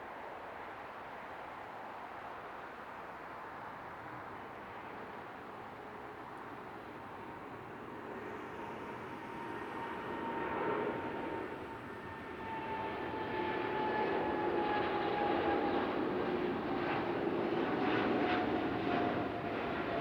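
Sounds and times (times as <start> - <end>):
jet engines passing: 5.8 - 20.0.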